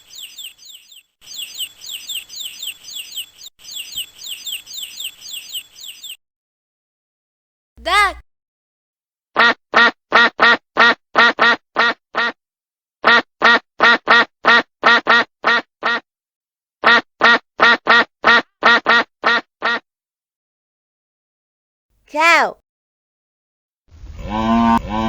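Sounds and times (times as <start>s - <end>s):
duck quacking: 13.0s - 16.0s, 16.8s - 19.8s.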